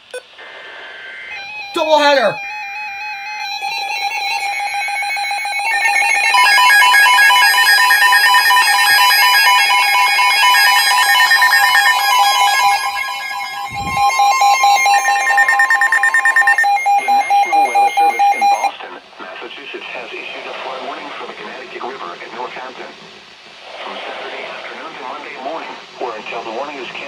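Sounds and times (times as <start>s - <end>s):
pulsing data bursts: 1.2s - 18.7s
two-tone attention signal: 1.4s - 18.7s.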